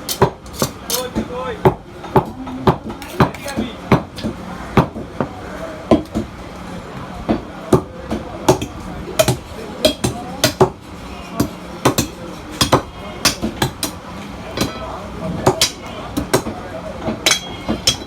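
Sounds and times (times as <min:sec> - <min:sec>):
cleaver chopping meat and bone: 0:00.0 - 0:05.0, 0:07.3 - 0:10.8, 0:11.4 - 0:14.0, 0:15.5 - 0:18.0.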